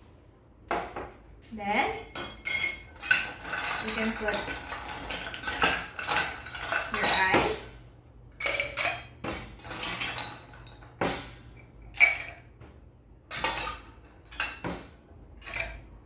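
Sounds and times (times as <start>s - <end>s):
ice cubes clinking into cup: 2.4s - 7.6s.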